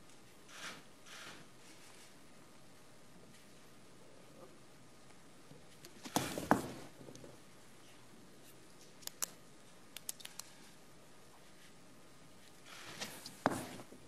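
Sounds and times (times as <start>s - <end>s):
pen clicks: 9.0s - 10.6s.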